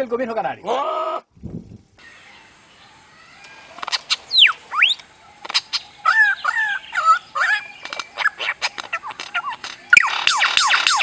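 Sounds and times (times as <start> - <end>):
wavering bird calls: 2.0 - 11.0
high chirps sliding down: 6.2 - 11.0.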